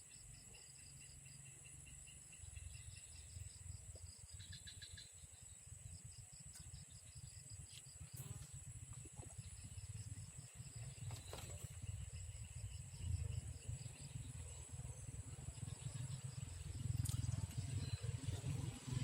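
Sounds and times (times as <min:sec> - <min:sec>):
insects trilling: 0:00.0 - 0:19.0.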